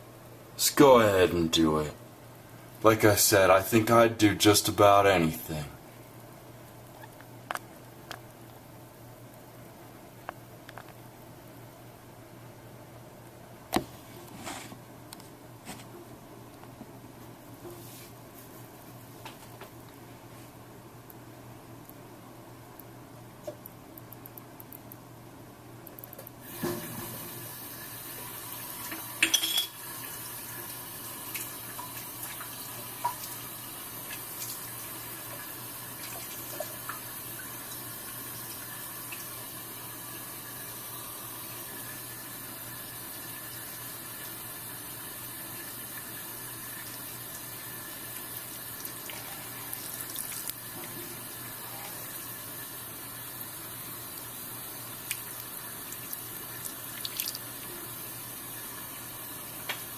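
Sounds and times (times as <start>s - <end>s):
water running: 26.4s - 59.9s.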